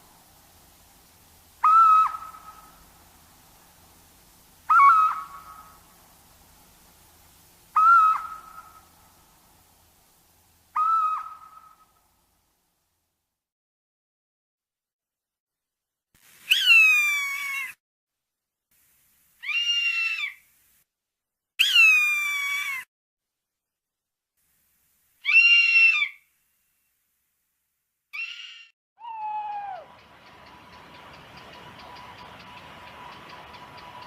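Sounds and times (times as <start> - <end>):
steady low hiss: 0.0 - 13.2, 16.2 - 17.7, 18.7 - 20.9, 24.4 - 28.0, 29.8 - 34.0
low sliding animal call: 19.4 - 20.4.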